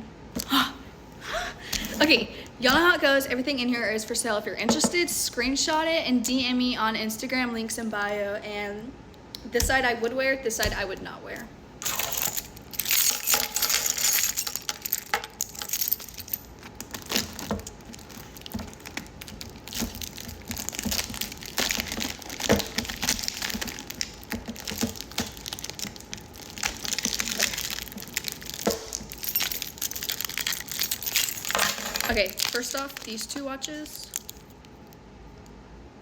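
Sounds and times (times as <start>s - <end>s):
metal watches clinking: 11.8s - 16.7s, 27.0s - 33.3s.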